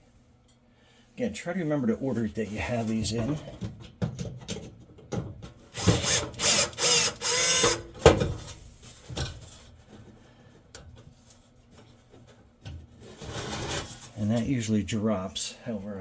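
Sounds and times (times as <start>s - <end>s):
screwdriver backing out screws: 5.8s - 7.8s.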